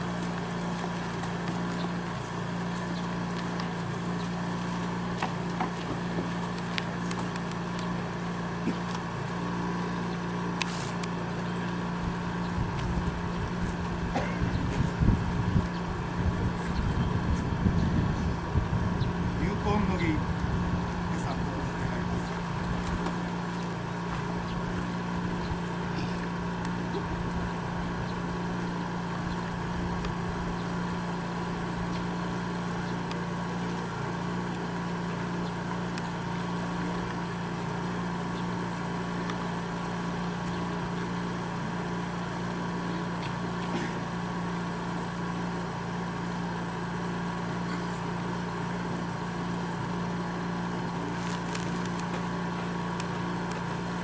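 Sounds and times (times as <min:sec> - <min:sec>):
low mechanical hum: 0:00.0 - 0:54.0.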